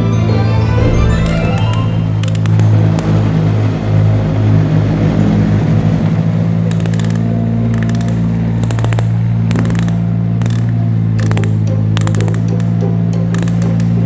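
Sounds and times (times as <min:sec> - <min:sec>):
sharp plastic clicks: 0:06.7 - 0:14.0.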